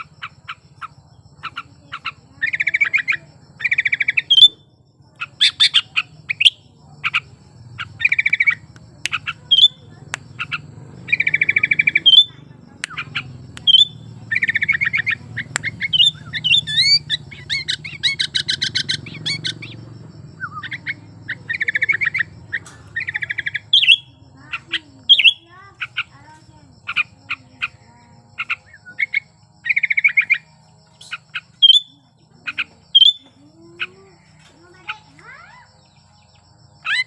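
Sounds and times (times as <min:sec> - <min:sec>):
bird chirping and whistling: 0:08.0 - 0:09.8, 0:10.4 - 0:19.8, 0:20.4 - 0:26.1, 0:31.0 - 0:33.9.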